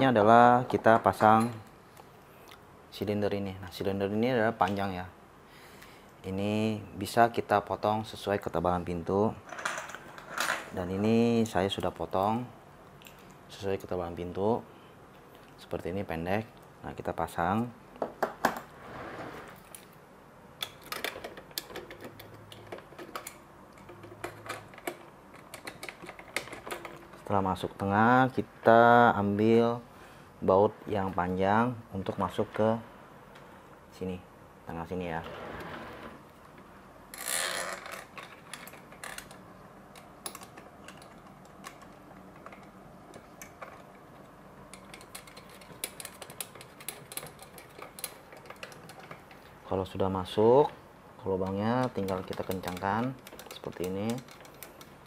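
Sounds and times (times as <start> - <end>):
metal lock hardware clicking: 37.2 - 43.9, 44.7 - 49.4.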